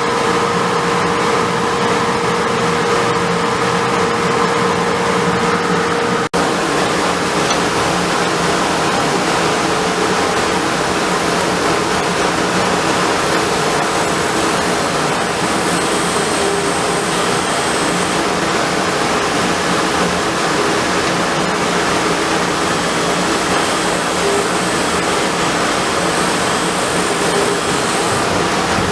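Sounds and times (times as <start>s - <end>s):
machine hiss: 6.7s - 28.9s.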